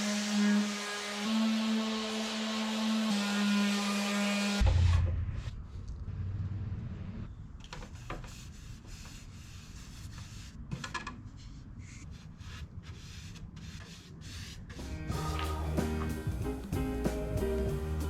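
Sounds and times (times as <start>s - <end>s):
rubbing and scraping on wood: 7.8s - 16.2s.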